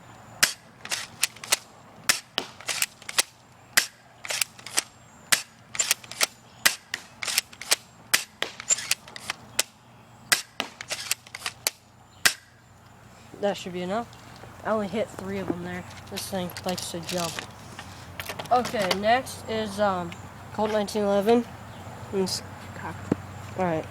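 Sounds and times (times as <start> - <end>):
airsoft rifle shots snapping: 0.4 - 12.5.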